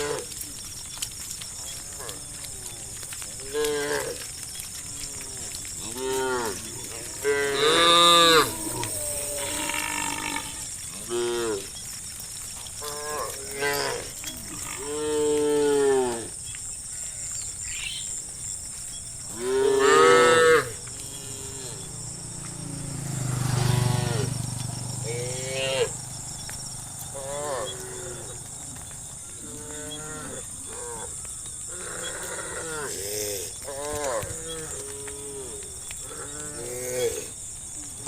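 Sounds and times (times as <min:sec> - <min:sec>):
cattle mooing: 0:05.0 - 0:11.7, 0:19.3 - 0:22.0, 0:25.0 - 0:26.0, 0:27.1 - 0:28.5.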